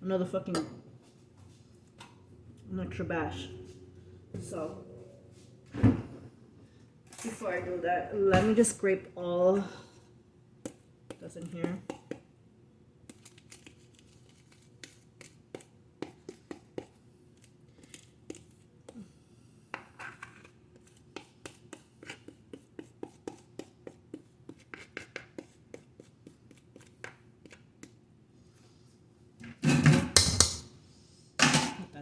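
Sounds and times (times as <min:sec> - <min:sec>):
utensil scraping batter: 0:13.0 - 0:19.1, 0:19.7 - 0:28.0.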